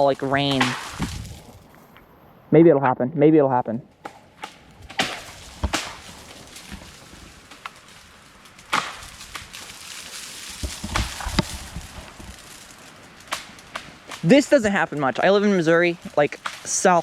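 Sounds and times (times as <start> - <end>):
icy branches cracking and snapping: 0.0 - 2.0, 3.9 - 17.0
dull thumps: 4.0 - 7.8, 10.6 - 12.4.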